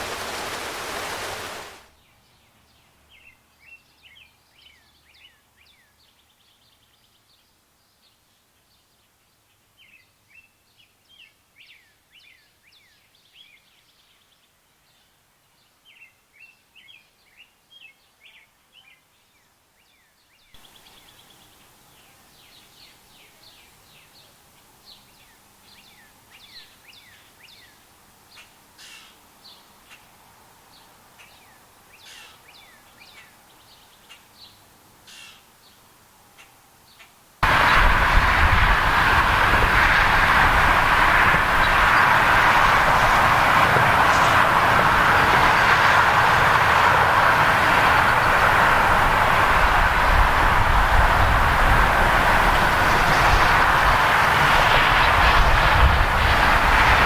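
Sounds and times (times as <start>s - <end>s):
rain hiss: 0.0s - 1.9s, 34.7s - 57.0s
outdoor background hiss: 0.0s - 57.0s.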